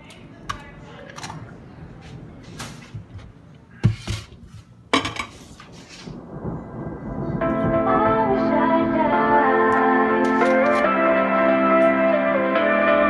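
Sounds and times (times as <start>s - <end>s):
kitchenware clinking and knocking: 2.8s - 6.1s, 10.2s - 10.9s.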